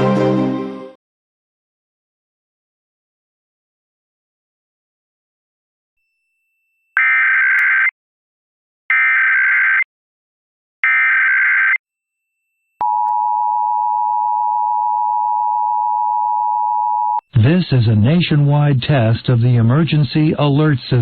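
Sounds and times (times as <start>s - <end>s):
loud steady two-tone alarm: 7.0s - 7.9s, 10.8s - 11.8s.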